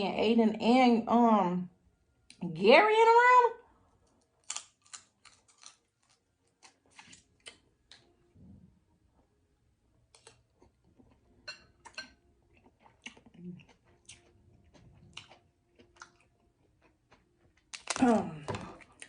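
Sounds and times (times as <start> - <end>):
person chewing: 4.0 - 8.1, 10.1 - 19.0.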